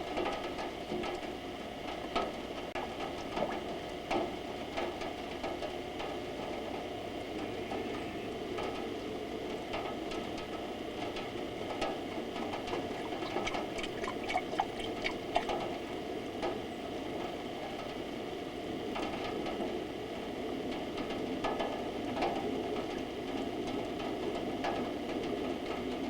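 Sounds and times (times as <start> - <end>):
drops ticking and splashing: 12.5 - 15.6.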